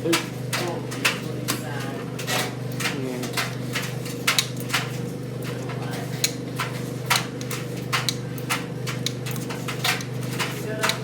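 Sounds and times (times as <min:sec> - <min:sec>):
tumble dryer motor hum: 0:00.0 - 0:11.0.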